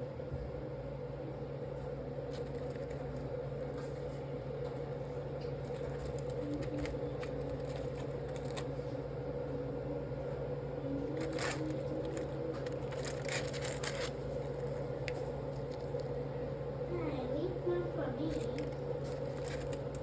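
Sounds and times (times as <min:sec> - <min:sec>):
steady mechanical hum: 0:00.0 - 0:20.0.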